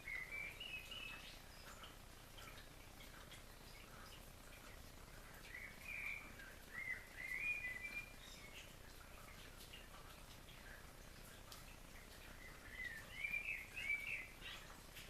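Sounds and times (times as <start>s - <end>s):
faint steady hiss: 0.0s - 15.0s
small birds chirping: 0.0s - 15.0s.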